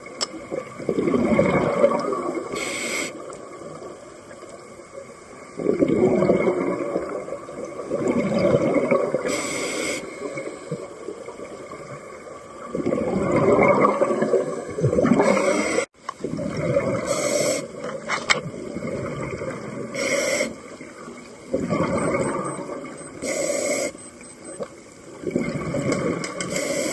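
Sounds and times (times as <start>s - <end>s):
bubbling exhalations: 0.8s - 2.3s, 5.6s - 7.1s, 7.9s - 9.3s, 12.7s - 17.8s, 21.5s - 22.7s
regulator hissing inhalations: 2.6s - 3.2s, 9.3s - 10.4s, 17.1s - 17.7s, 20.0s - 20.6s, 23.2s - 24.0s, 26.5s - 26.9s.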